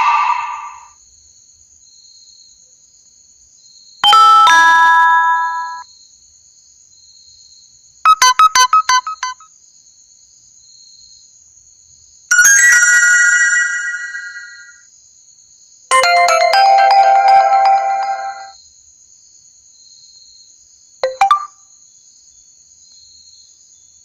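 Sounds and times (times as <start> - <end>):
phone notification chime: 4.0 - 5.8, 12.3 - 14.7, 15.9 - 18.5, 21.0 - 21.5.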